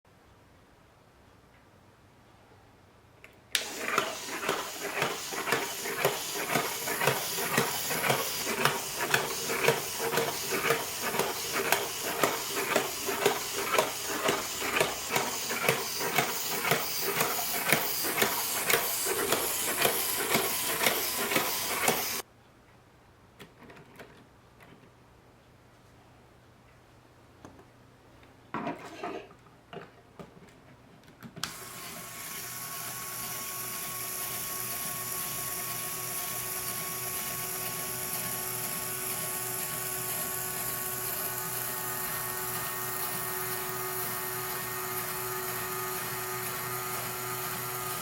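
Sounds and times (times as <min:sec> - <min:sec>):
electric motor whirring: 0:03.6 - 0:22.2, 0:31.5 - 0:48.0.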